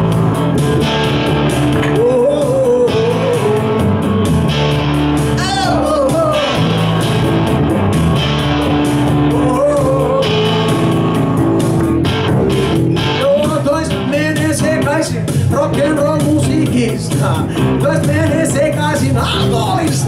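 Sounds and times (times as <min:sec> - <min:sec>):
rock and roll band playing: 0:00.0 - 0:20.0
person singing wordless vocal: 0:01.8 - 0:03.9, 0:05.4 - 0:06.8, 0:09.2 - 0:11.4, 0:13.1 - 0:20.0.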